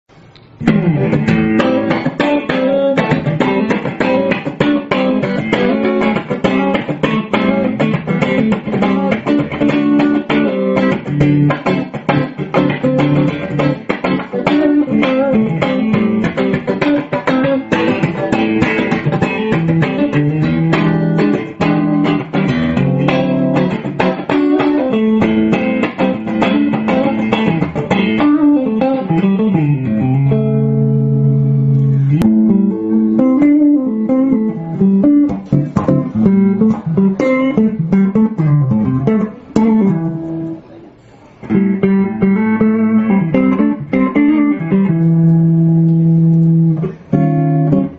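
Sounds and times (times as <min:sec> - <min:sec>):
electric guitar notes and chords: 0:00.4 - 0:47.9.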